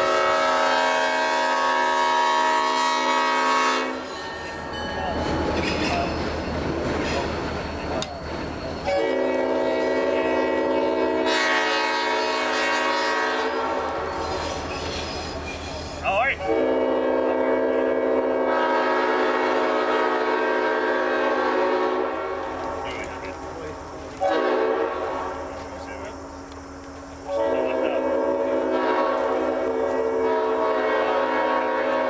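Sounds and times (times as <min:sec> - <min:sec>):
locomotive air horn chord: 0:00.0 - 0:04.2, 0:08.9 - 0:14.1, 0:16.4 - 0:23.0, 0:24.2 - 0:25.4, 0:27.3 - 0:32.0
diesel locomotive engine idling: 0:04.2 - 0:11.5, 0:22.1 - 0:32.0.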